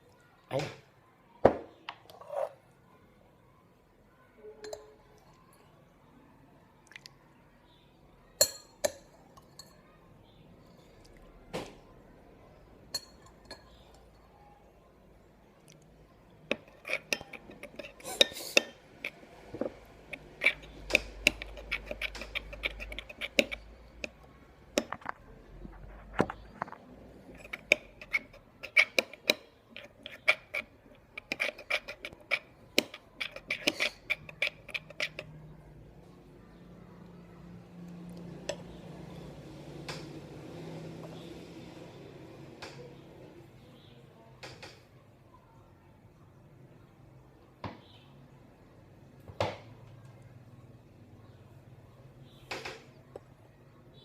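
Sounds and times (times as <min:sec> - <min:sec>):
utensil clinking against bowl: 0:04.6 - 0:05.0, 0:08.4 - 0:09.8, 0:12.9 - 0:14.2, 0:16.5 - 0:25.2, 0:25.9 - 0:35.4.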